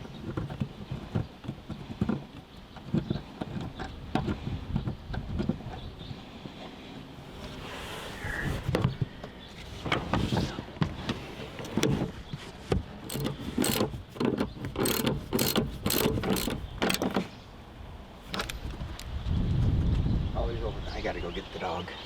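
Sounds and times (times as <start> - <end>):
socket ratchet clicking: 13.1 - 17.3.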